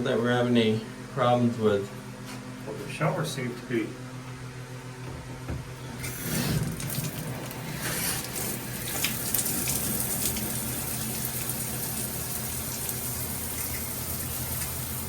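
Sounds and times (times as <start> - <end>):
shower water spraying: 6.0 - 15.0.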